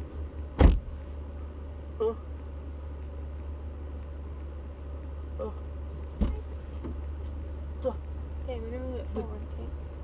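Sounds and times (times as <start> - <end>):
car engine hum: 0.0 - 10.0
person moaning: 2.0 - 2.3, 5.4 - 5.7.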